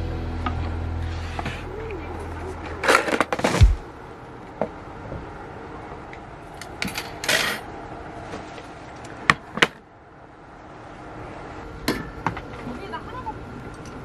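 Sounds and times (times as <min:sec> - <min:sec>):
short rustle: 0:02.5 - 0:03.9
dull thump: 0:03.3 - 0:03.9.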